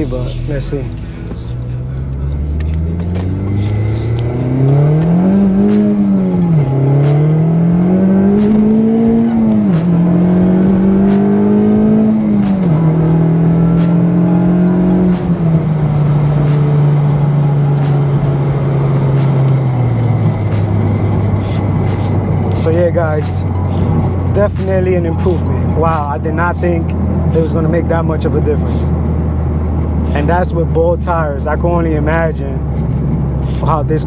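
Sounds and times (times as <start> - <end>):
car engine accelerating: 0.0 - 34.0.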